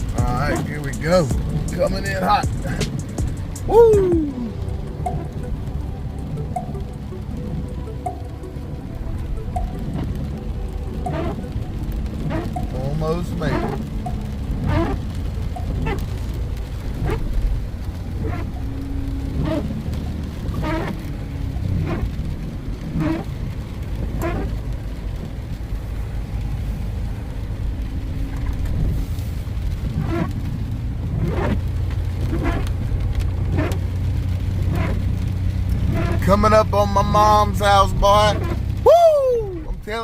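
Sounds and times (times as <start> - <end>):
car engine and tyres rumbling: 0.0 - 40.0
short higher-pitched sounds: 3.6 - 5.4.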